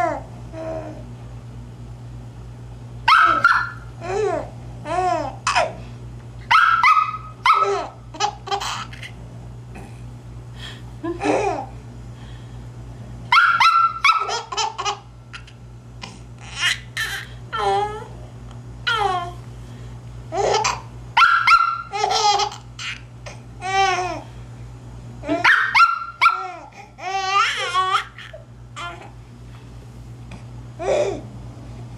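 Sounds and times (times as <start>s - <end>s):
baby giggling: 7.6s - 9.2s, 16.4s - 17.9s, 21.9s - 23.0s, 26.4s - 29.0s.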